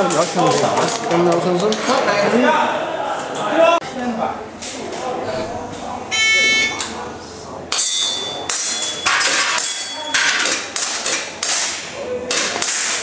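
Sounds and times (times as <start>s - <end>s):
metallic ring of targets: 7.7s - 10.2s.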